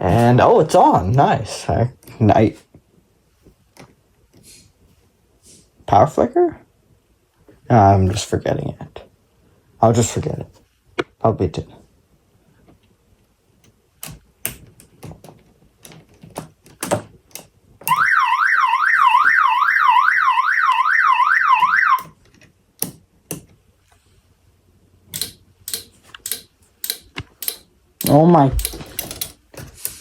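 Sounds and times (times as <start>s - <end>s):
electronic warbling siren: 17.9s - 22.1s
sharp clicks: 25.1s - 29.4s.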